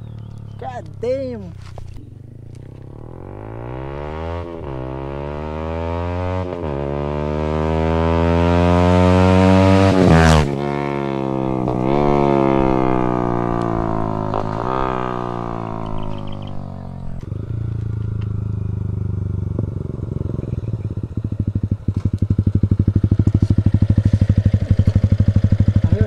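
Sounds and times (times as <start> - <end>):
motorcycle engine accelerating: 0.0 - 26.0.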